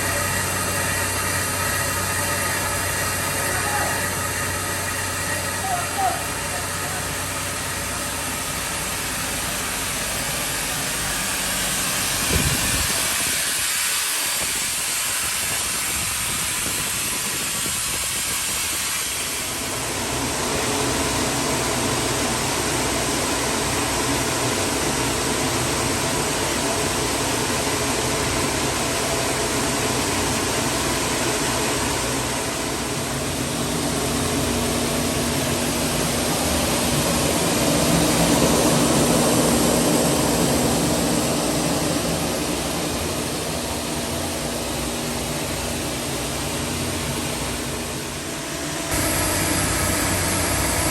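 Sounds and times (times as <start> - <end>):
strong hiss: 0.0 - 19.9, 42.0 - 50.9
steam boiler rumbling: 0.0 - 50.9
steady low hum: 30.3 - 50.9.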